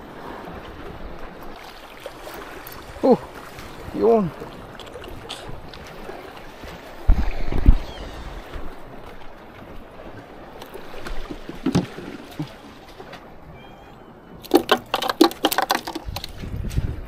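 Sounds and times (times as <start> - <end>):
wind buffeting microphone: 2.8 - 13.6, 16.0 - 17.0.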